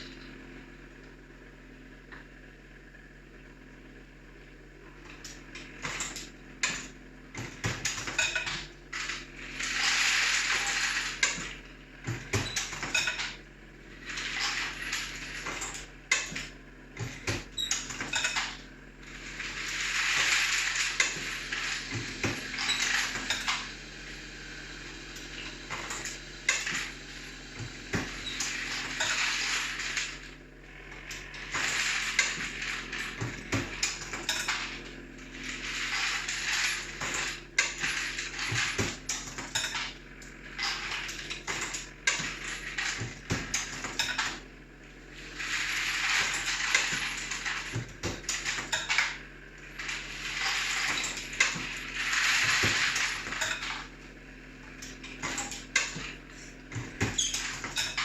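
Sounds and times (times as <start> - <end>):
steady hum: 0.0 - 58.0.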